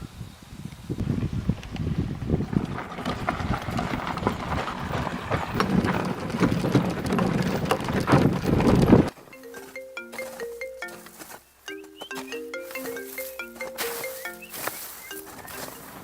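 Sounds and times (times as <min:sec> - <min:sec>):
horse hooves clip-clopping: 0:01.5 - 0:16.0
electronic ringtone melody: 0:09.3 - 0:16.0.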